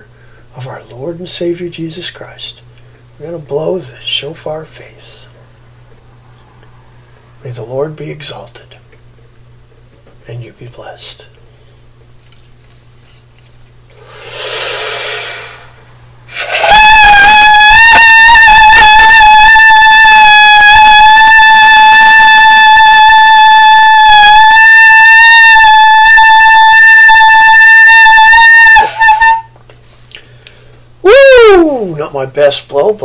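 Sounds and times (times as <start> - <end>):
short hiss: 14.0 - 16.7
ram's horn blast: 16.5 - 29.6.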